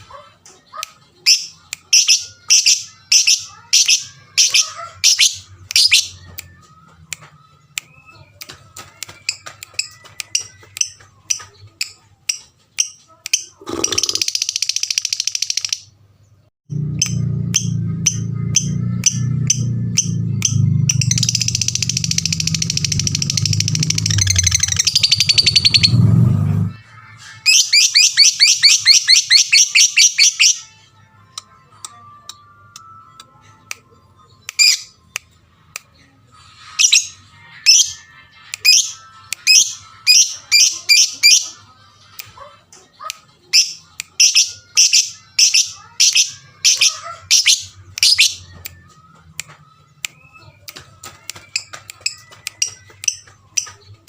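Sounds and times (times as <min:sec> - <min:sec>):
lovebird chirping shrilly: 0:21.0 - 0:26.0.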